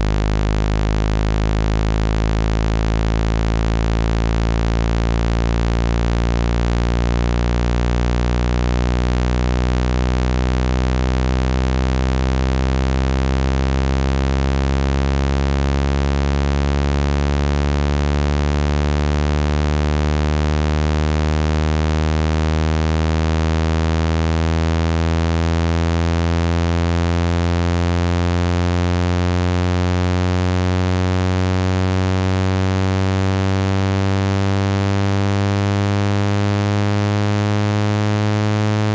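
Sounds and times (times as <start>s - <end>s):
low buzzing tone rising in pitch: 0.0s - 38.9s.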